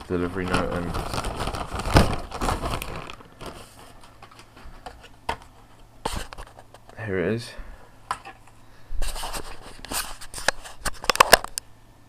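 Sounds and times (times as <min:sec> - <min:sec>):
paper packaging rustling: 0:00.0 - 0:06.9, 0:09.0 - 0:11.5.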